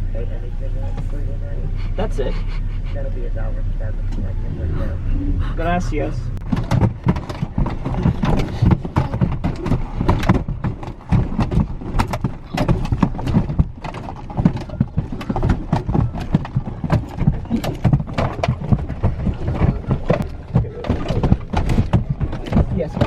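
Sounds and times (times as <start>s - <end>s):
knocking and thumping inside a car: 6.4s - 23.0s.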